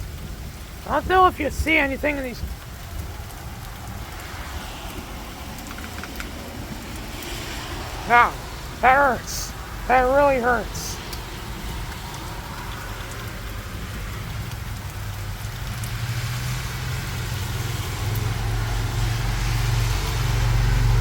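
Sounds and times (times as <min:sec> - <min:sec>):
thunder rumble: 0:00.0 - 0:08.8, 0:16.9 - 0:21.0
heavy rain: 0:00.0 - 0:21.0.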